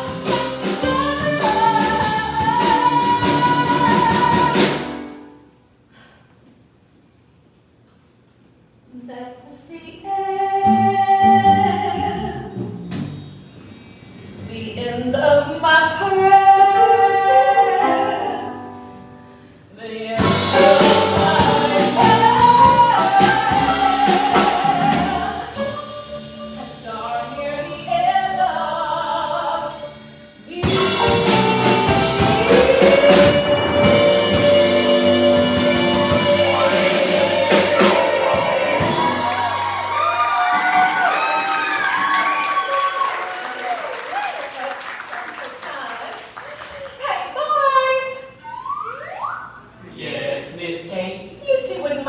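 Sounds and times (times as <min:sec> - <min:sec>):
woman singing: 0:00.0 - 0:05.0, 0:08.9 - 0:12.5, 0:14.5 - 0:18.7, 0:19.8 - 0:39.7
instrumental accompaniment: 0:20.2 - 0:40.3.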